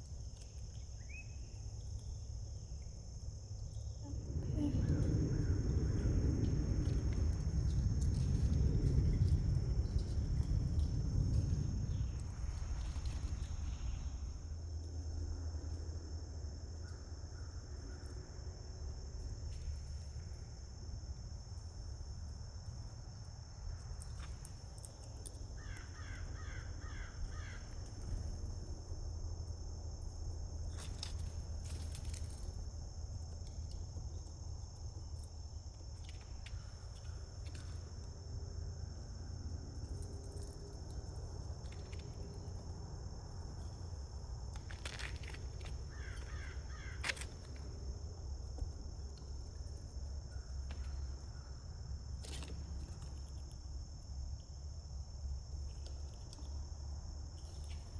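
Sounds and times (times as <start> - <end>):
high-pitched insect chorus: 0.0 - 57.9
low rumble: 3.7 - 16.7
crows cawing: 25.6 - 27.6, 45.9 - 47.1.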